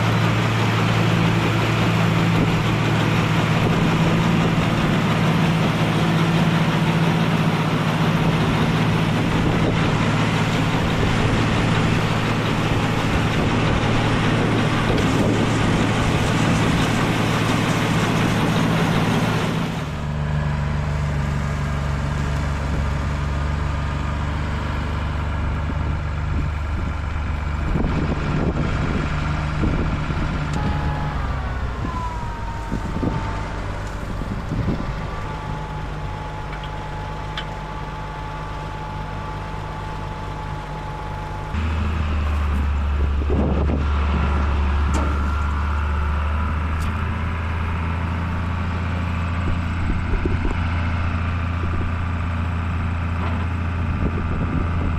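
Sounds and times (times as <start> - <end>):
tractor engine under load: 0.0 - 54.9.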